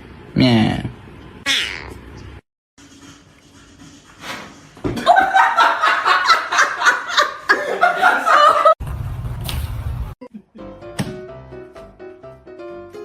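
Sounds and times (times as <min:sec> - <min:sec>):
person laughing hard: 0:05.0 - 0:08.8.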